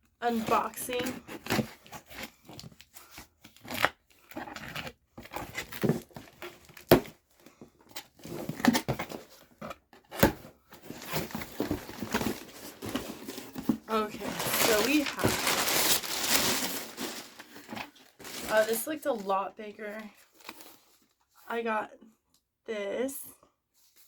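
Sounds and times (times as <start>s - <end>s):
paper packaging crinkling and tearing: 10.8s - 21.1s.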